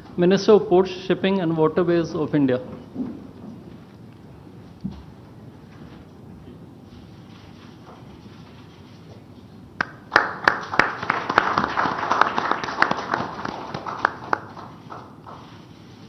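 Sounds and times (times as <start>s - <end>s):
applause: 9.8s - 15.7s.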